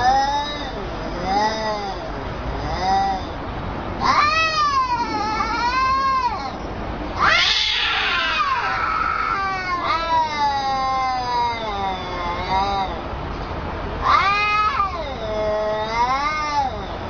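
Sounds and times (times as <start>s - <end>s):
cat yowling: 4.0s - 13.0s, 14.0s - 17.0s.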